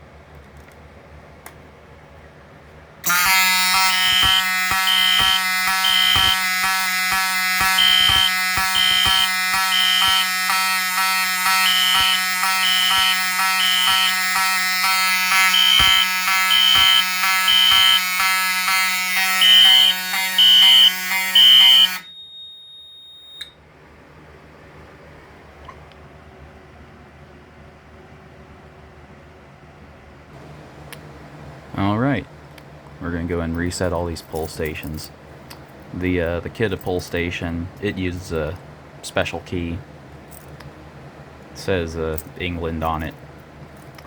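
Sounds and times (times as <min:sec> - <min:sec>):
continuous buzzing alarm horn: 0:03.0 - 0:23.4
high beeping alarm tone: 0:03.0 - 0:23.5.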